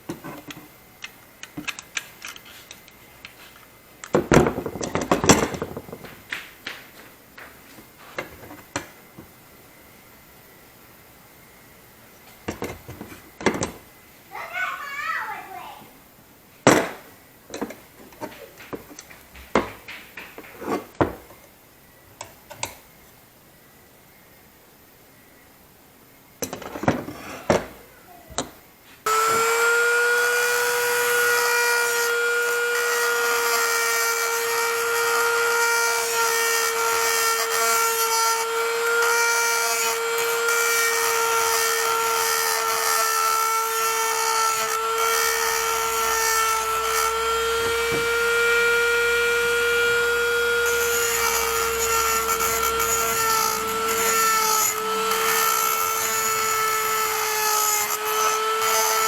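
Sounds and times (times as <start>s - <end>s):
knocks: 4.1s - 8.9s, 16.7s - 21.2s
power tool grinding whine: 29.0s - 59.0s.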